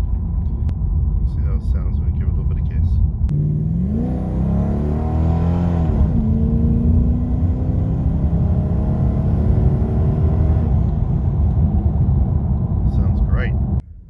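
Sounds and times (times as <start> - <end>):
car engine accelerating: 3.3 - 14.0.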